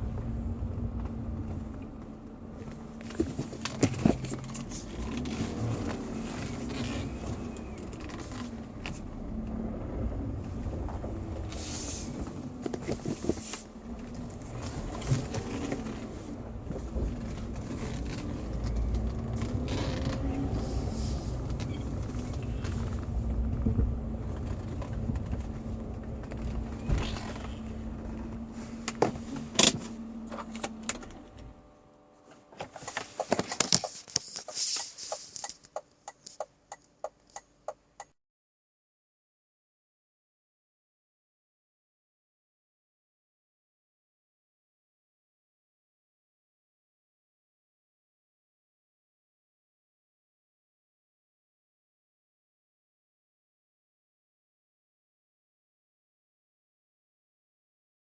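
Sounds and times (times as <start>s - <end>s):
car engine running: 0.0s - 38.0s
sharp clicks and knocks: 32.6s - 38.1s.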